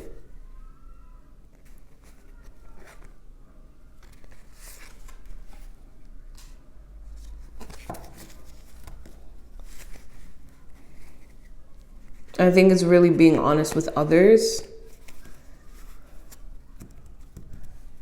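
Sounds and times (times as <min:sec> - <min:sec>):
cards rustling and tapping: 0:07.2 - 0:12.3, 0:14.9 - 0:18.0.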